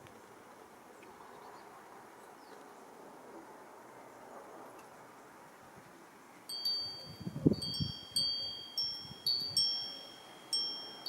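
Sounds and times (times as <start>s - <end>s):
wind chime ringing: 6.5s - 11.0s.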